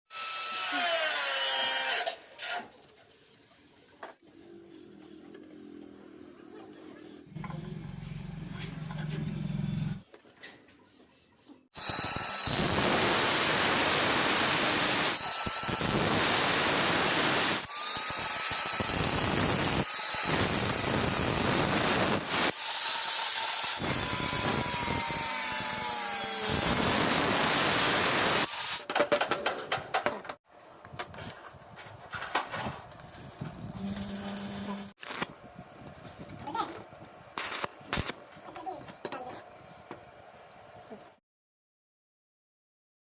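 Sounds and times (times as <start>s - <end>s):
power tool grinding iron: 11.8s - 28.9s.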